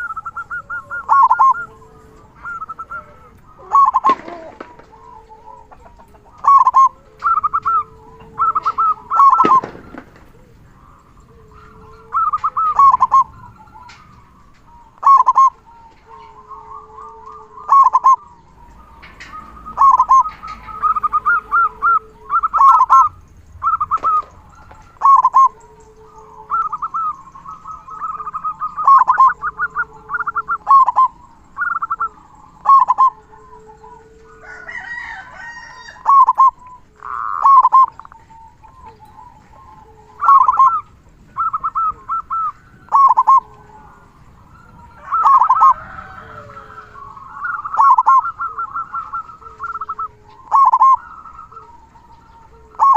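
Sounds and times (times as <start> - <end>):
dove cooing: 0.0 - 52.9.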